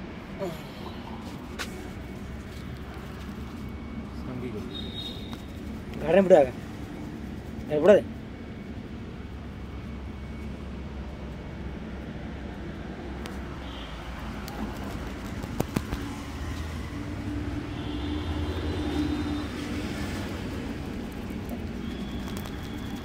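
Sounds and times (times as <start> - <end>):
road traffic rumble: 0.0 - 23.0
sharp clicks: 14.4 - 16.1, 21.9 - 23.0.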